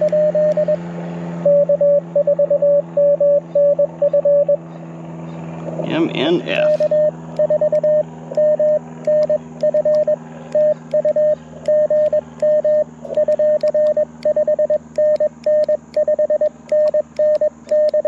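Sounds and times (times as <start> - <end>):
morse code tone beeping: 0.0 - 0.8, 1.5 - 4.6, 5.9 - 18.0
sharp clicks: 0.0 - 0.8, 6.8 - 18.0
steady low hum: 0.0 - 18.0.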